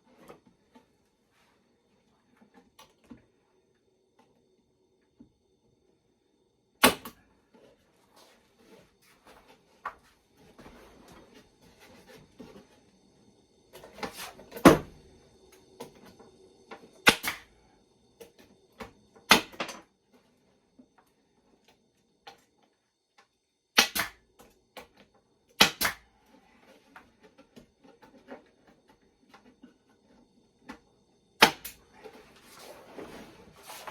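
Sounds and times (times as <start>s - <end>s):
staple gun shots: 6.8s - 7.1s, 17.1s - 17.4s, 23.8s - 24.2s, 25.6s - 26.0s.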